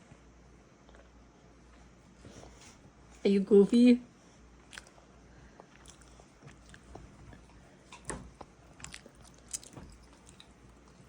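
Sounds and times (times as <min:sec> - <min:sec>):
child chewing food: 0:00.8 - 0:03.0, 0:04.4 - 0:11.0.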